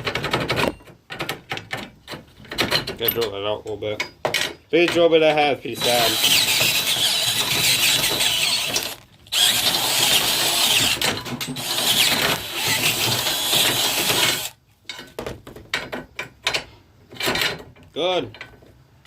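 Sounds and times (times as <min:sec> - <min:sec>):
cordless drill boring: 0:05.8 - 0:14.6.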